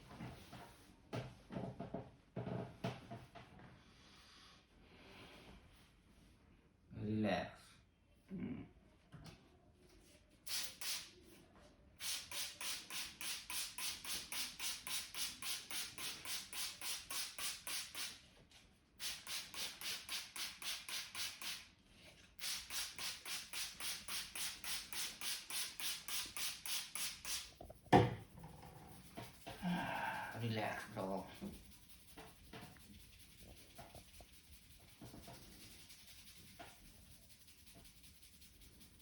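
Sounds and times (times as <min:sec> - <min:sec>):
hands rubbing scalp and hair: 0:12.1 - 0:18.2, 0:19.0 - 0:21.8, 0:22.4 - 0:39.0.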